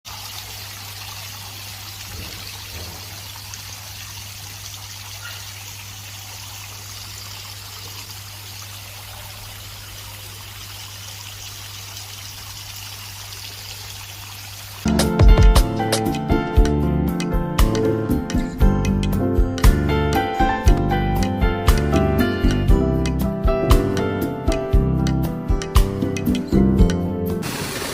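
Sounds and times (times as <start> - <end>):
water trickling and splashing: 0.0 - 16.6, 27.4 - 27.9.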